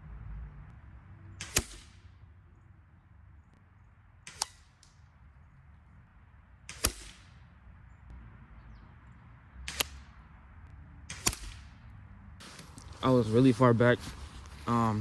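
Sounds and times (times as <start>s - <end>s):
distant air rifle shots: 1.4s - 2.2s, 4.2s - 5.0s, 6.6s - 7.6s, 9.6s - 10.2s, 11.0s - 11.9s.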